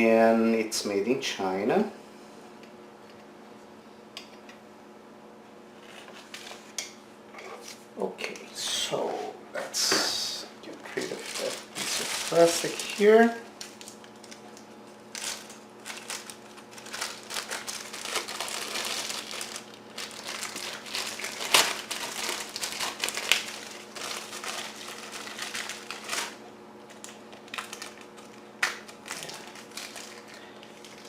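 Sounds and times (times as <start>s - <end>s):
plastic packaging crinkling: 10.8s - 31.0s.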